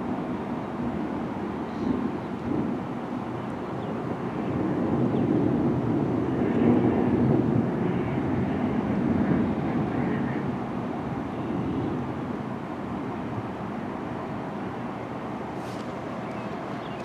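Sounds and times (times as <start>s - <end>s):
rolling thunder: 4.5s - 10.6s.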